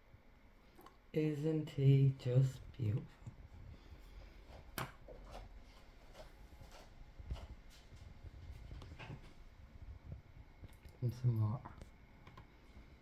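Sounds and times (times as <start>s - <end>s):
faint clicks and taps from handling: 4.2s - 12.9s.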